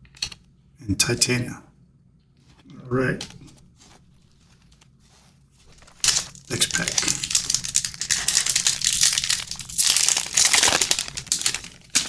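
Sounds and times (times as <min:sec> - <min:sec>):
card pack wrapper tearing and crinkling: 0:03.8 - 0:12.0.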